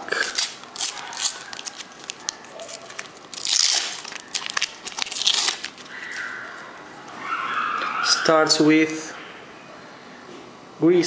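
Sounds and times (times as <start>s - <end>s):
sticker packet tearing: 0.0s - 5.9s
wrapper crinkling: 0.0s - 6.6s.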